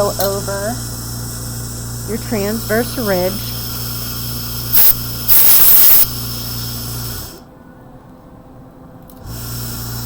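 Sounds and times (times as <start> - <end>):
steady electrical hum: 0.0 - 10.0
hissing air bursts: 0.7 - 7.5.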